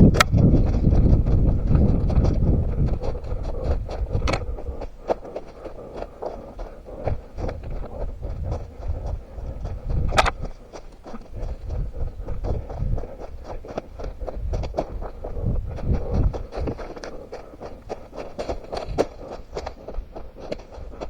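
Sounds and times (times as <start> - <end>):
running footsteps on forest ground: 0.0 - 21.0
sharp cracks: 10.1 - 11.6.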